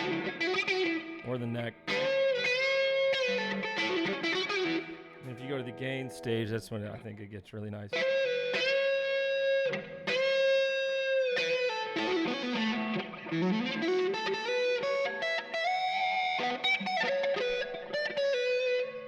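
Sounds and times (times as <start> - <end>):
overdriven electric guitar lead: 0.0 - 7.0, 7.9 - 19.0.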